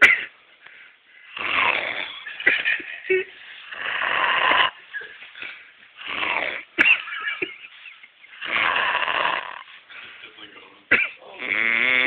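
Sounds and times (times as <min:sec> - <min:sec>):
man snoring: 0:01.4 - 0:02.2, 0:03.7 - 0:04.8, 0:06.0 - 0:06.7, 0:08.4 - 0:09.7, 0:11.4 - 0:12.0.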